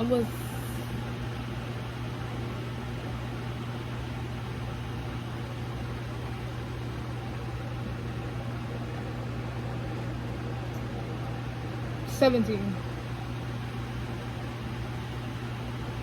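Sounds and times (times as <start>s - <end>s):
motor humming with hiss: 0.0s - 8.2s.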